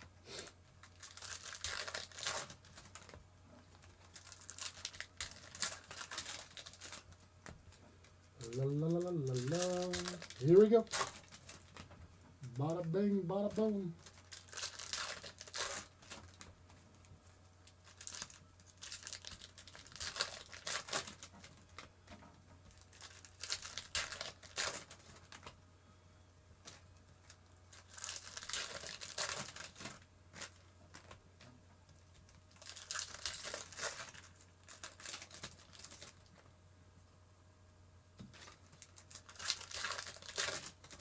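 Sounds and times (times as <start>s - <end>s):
card pack wrappers crinkling and tearing: 0.3s - 17.0s, 17.6s - 21.9s, 22.6s - 25.6s, 26.6s - 31.2s, 32.1s - 36.5s, 38.2s - 41.0s.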